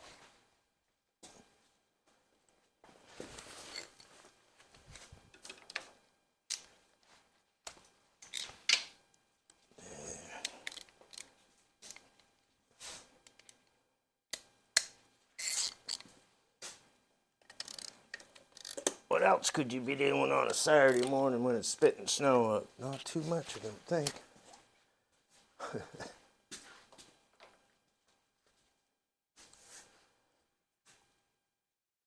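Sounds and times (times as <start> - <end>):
hand tools clicking on metal: 17.4 - 19.1, 20.4 - 21.2.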